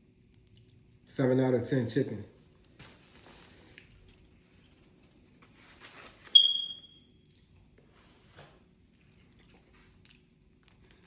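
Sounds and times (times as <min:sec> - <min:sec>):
soft rustling: 0:02.4 - 0:06.4.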